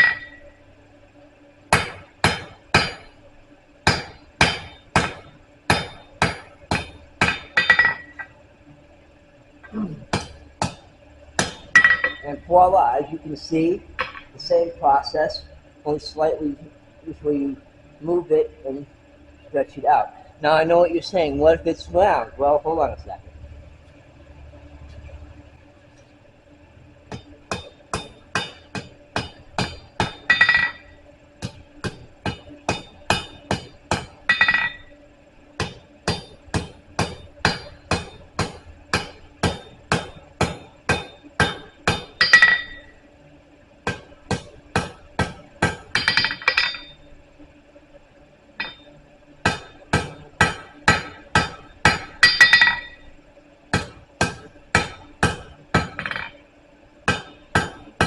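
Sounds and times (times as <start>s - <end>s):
hammer striking steel on anvil: 0.0s - 0.5s, 1.7s - 3.1s, 3.9s - 8.4s, 11.4s - 12.5s, 14.0s - 14.3s, 27.1s - 34.9s, 35.6s - 43.0s, 43.8s - 47.0s, 48.6s - 53.1s, 53.7s - 56.4s, 57.1s - 58.0s
faint steady hum: 0.0s - 58.0s.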